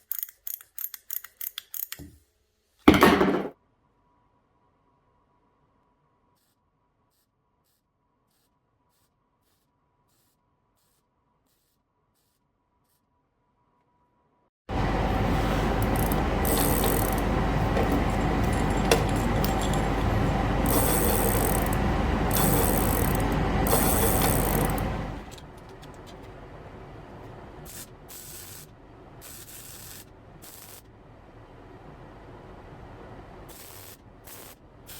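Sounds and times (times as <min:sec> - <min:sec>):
power tool running: 0:14.7 - 0:26.3.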